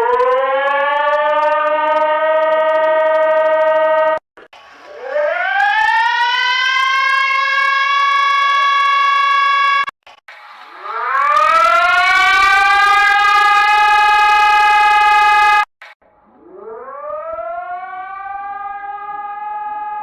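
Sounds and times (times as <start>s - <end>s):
siren-like rising tone: 0.0s - 4.2s, 4.9s - 9.9s, 10.6s - 15.7s, 16.3s - 20.0s
steady alarm tone: 10.7s - 15.7s.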